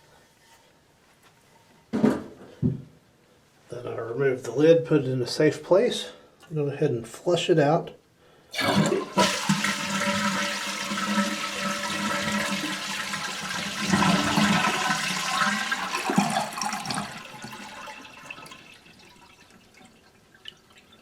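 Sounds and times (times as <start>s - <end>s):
toilet flushing: 8.5s - 21.0s.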